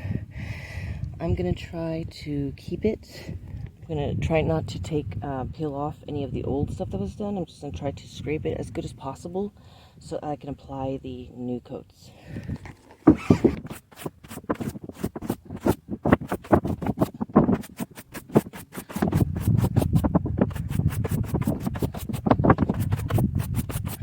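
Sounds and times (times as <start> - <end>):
tool scraping sealant off metal: 12.6 - 24.0.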